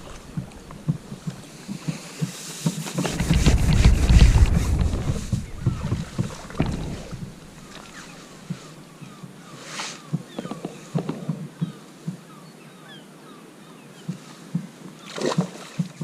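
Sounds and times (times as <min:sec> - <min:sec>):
wind gusting across microphone: 0:02.9 - 0:08.6.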